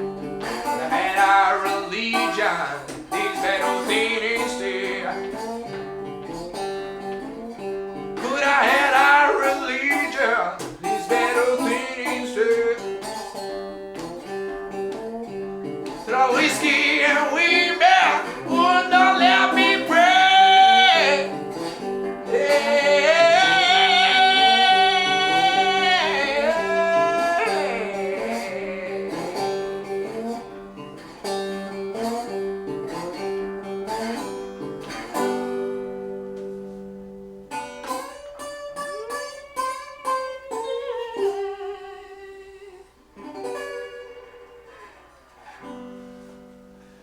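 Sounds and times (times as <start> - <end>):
slide blues resonator guitar: 0.0 - 47.0
person humming: 22.3 - 29.7.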